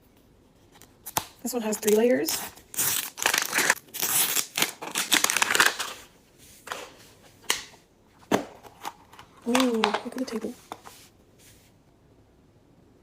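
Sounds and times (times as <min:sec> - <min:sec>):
wrapping crinkling and tearing: 0:00.8 - 0:06.1.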